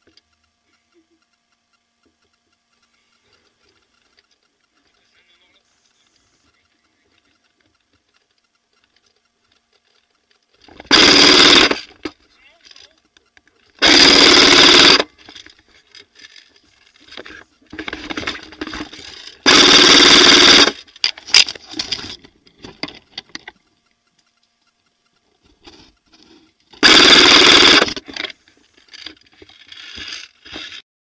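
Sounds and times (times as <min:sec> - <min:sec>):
electric toy gun full-auto bursts: 0:10.7 - 0:12.1, 0:13.8 - 0:15.6, 0:18.1 - 0:21.6, 0:26.8 - 0:29.1.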